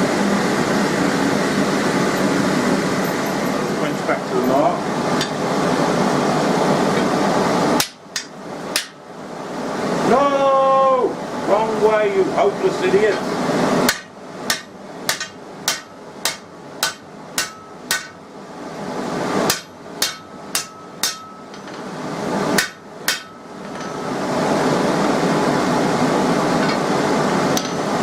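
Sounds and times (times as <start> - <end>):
hammer striking steel: 7.8 - 9.0, 13.9 - 18.2, 19.4 - 21.8, 22.6 - 24.1, 27.6 - 27.9.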